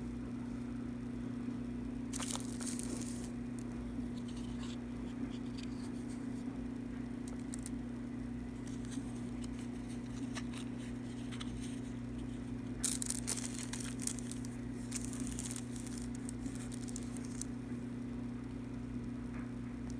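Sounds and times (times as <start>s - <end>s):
low electrical hum: 0.0s - 19.9s
clicks and crackles: 2.1s - 7.8s, 8.6s - 17.7s.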